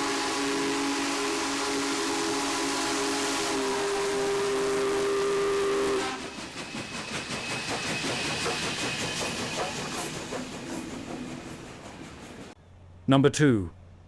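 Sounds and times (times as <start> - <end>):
steam whistle blowing: 0.0 - 6.4
passing train noise: 0.0 - 13.0.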